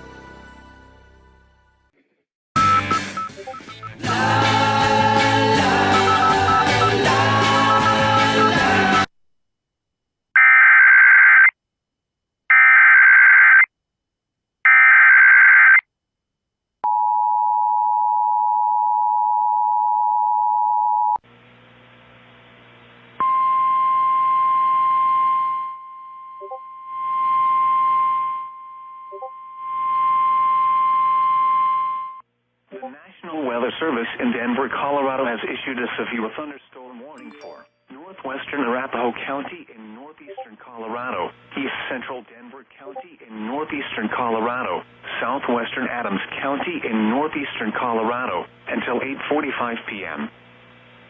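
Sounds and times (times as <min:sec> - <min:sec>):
two-tone attention signal: 0:02.6 - 0:04.0, 0:05.9 - 0:07.1, 0:23.2 - 0:32.2
steady alert tone: 0:37.2 - 0:37.9.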